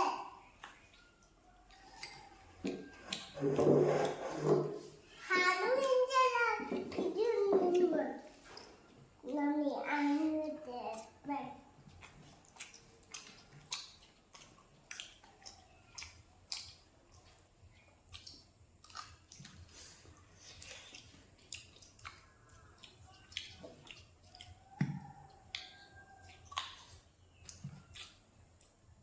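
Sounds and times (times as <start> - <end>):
crunchy chewing: 0.5 - 4.2, 11.8 - 29.0.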